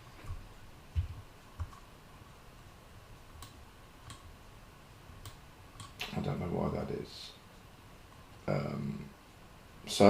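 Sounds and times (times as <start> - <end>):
computer mouse and keyboard clicks: 0.2 - 1.9, 3.4 - 4.3, 5.2 - 6.2.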